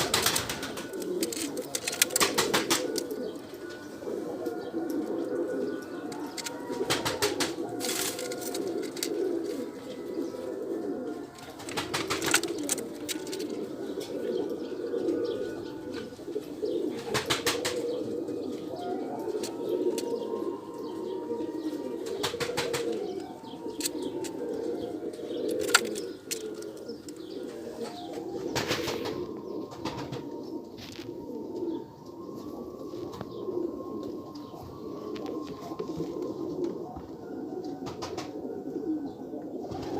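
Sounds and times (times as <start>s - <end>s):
wings flapping: 0.0s - 3.1s, 6.4s - 9.2s, 11.4s - 13.5s, 17.0s - 17.9s, 22.0s - 23.0s, 28.5s - 30.3s
pigeons cooing: 0.0s - 39.9s.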